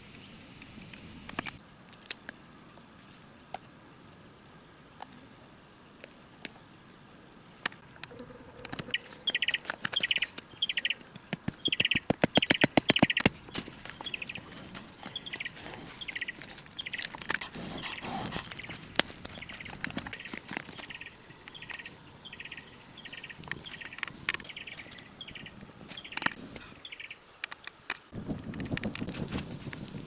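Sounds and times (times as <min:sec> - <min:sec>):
songbird buzzy trills: 0:07.8 - 0:11.0, 0:11.6 - 0:27.4.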